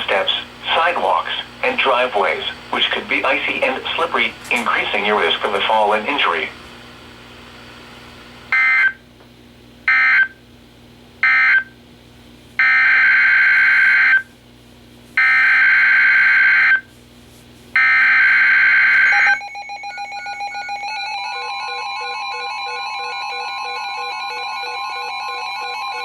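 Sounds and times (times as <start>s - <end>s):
weather radio alarms beeping: 15.2s - 16.8s, 17.8s - 19.4s.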